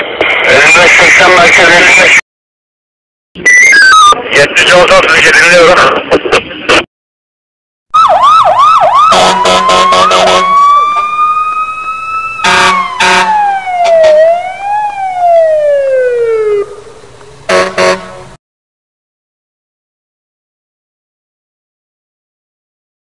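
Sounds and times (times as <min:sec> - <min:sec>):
electronic siren wailing: 0:03.5 - 0:04.2, 0:07.9 - 0:18.0
short horn blasts: 0:12.4 - 0:13.3, 0:17.5 - 0:18.3.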